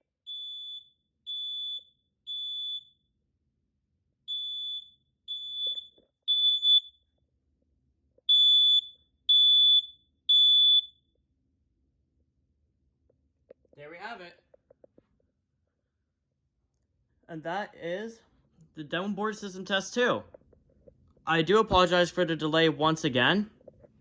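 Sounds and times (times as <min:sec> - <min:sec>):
smoke alarm beeping: 0:00.1 - 0:03.2, 0:04.3 - 0:07.2, 0:08.3 - 0:11.1.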